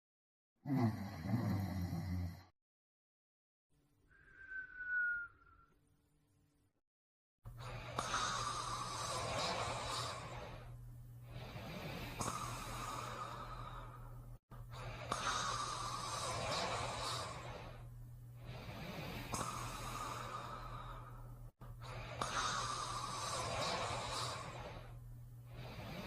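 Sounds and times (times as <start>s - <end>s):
heavy breathing of sleeper: 7.5s - 26.0s.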